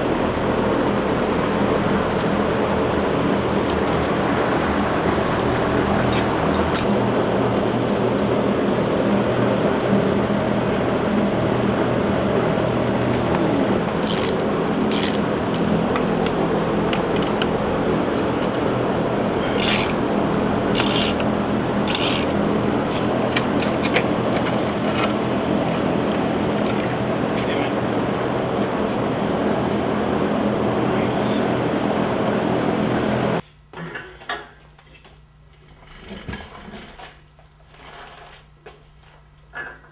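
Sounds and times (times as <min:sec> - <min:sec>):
droning hum: 0:00.0 - 0:39.9
hand tools clinking on metal: 0:02.0 - 0:06.9, 0:13.0 - 0:29.1.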